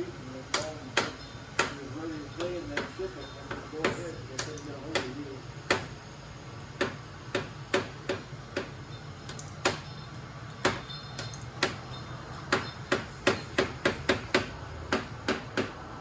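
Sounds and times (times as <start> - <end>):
low steady hum: 0.0 - 16.0
sharp clicks: 8.6 - 14.5.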